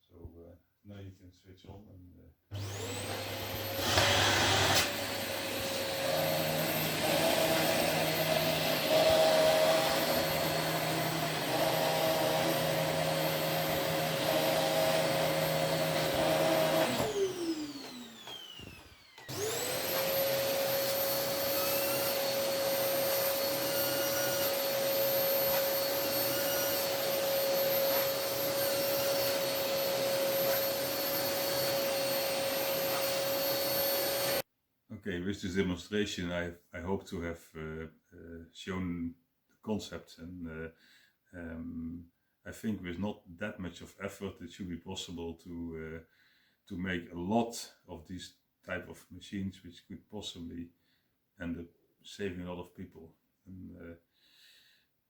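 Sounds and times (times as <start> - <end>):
vacuum cleaner motor whine: 2.6 - 34.4.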